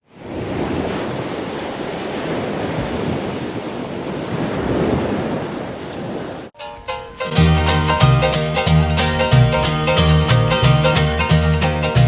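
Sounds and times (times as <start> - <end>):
rushing water: 0.0 - 6.6.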